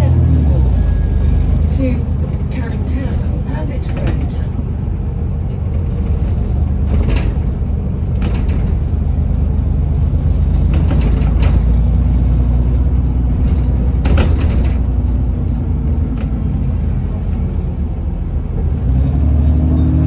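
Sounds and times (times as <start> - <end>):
bus engine rumbling: 0.0 - 20.0
knocks and rattles: 2.2 - 4.8, 5.7 - 16.8.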